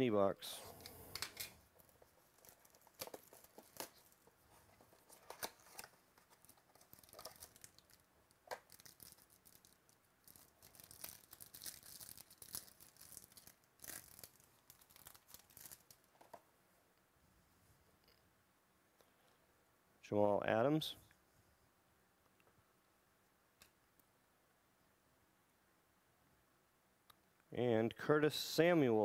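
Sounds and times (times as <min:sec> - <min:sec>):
cards crackling and rustling: 0:00.6 - 0:16.4
wrapper tearing and crinkling: 0:01.8 - 0:04.2, 0:04.9 - 0:16.1.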